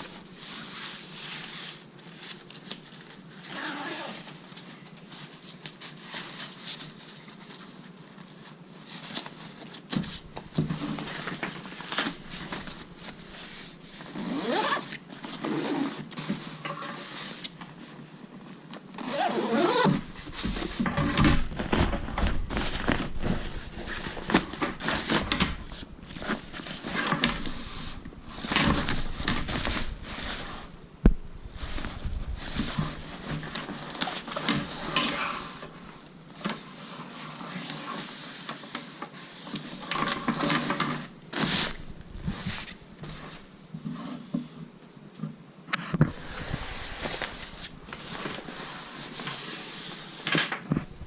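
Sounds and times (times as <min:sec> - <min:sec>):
fabric rustling: 0:00.0 - 0:43.6, 0:46.0 - 0:51.0
zips pulled: 0:14.1 - 0:15.9, 0:19.0 - 0:20.0.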